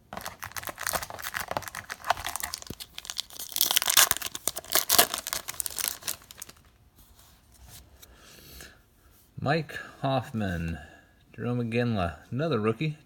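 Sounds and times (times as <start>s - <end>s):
wrapper tearing and crinkling: 0.1s - 6.7s.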